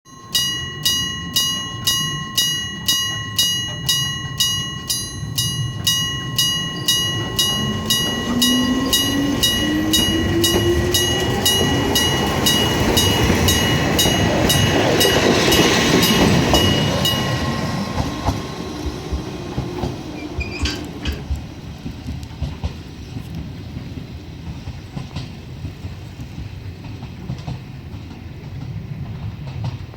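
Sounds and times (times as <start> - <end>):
level crossing bell ringing: 0.1 - 19.5
train motor hum: 0.1 - 27.7
train rumble: 0.1 - 29.9
wheel clatter: 0.4 - 27.6.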